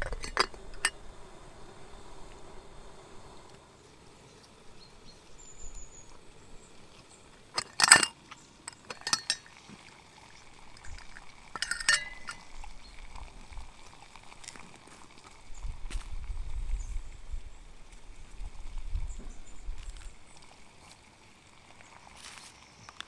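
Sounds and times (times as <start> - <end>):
hard objects clinking together: 0.0 - 1.0, 7.6 - 8.1, 8.7 - 9.5, 10.8 - 12.4.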